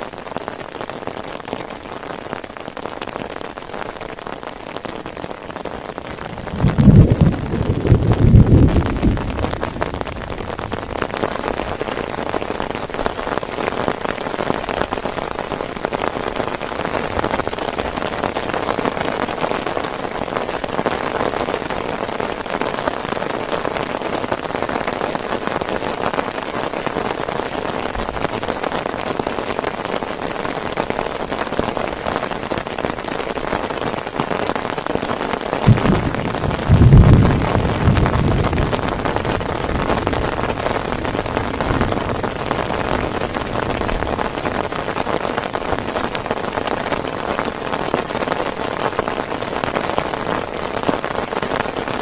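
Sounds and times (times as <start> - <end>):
heavy rain falling: 0.0 - 52.0
low rumble: 6.3 - 10.6, 35.7 - 44.1.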